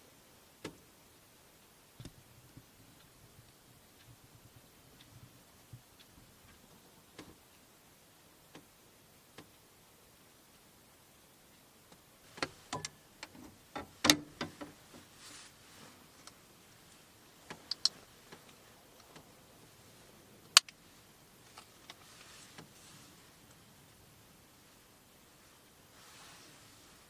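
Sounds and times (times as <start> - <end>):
soft rustling: 12.2 - 27.0.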